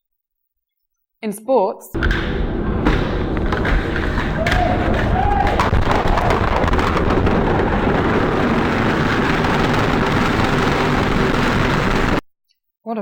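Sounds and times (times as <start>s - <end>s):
skis sliding down escalator: 2.0s - 12.2s.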